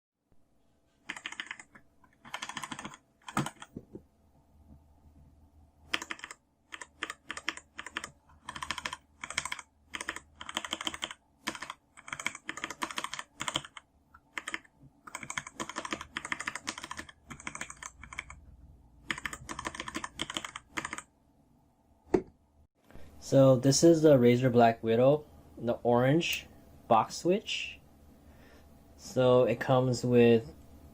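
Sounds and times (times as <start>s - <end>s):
mechanical keyboard typing: 1.1s - 3.7s, 5.9s - 18.4s, 19.0s - 21.1s.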